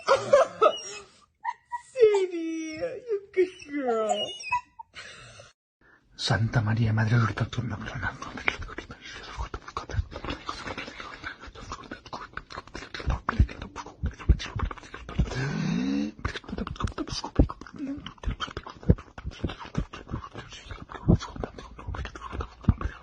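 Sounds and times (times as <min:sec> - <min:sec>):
dog whining: 0:00.0 - 0:05.0.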